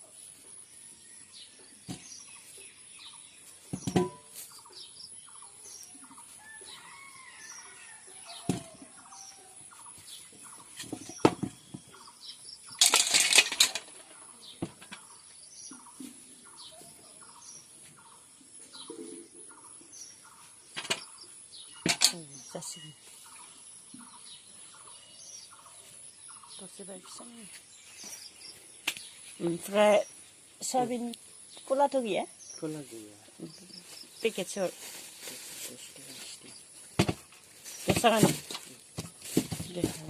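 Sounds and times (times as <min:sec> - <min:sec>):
faint bird chirps: 0:14.0 - 0:36.7.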